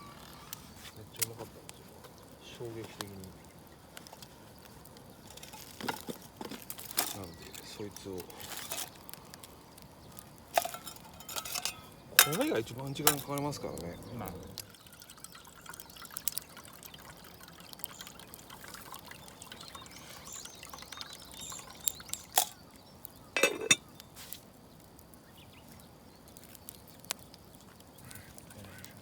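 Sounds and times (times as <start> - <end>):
water pouring and trickling: 0.0 - 24.3
sharp knocks and clinks: 10.6 - 13.4, 23.4 - 23.8.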